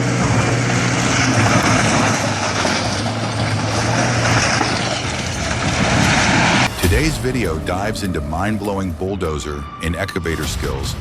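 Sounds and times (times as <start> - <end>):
heavy machine engine running: 0.0 - 11.0.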